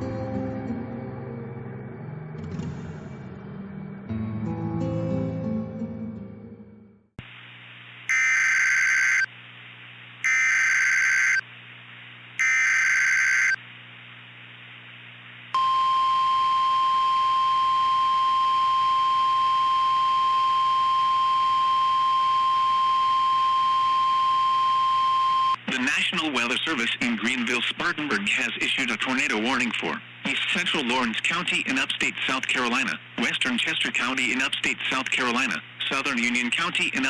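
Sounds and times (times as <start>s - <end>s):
faint hum: 7.2s - 37.0s
screeching data tones: 8.1s - 9.3s, 10.2s - 11.4s, 12.4s - 13.6s
steady warning tone: 8.1s - 9.3s, 10.2s - 11.4s, 12.4s - 13.6s, 15.6s - 25.6s.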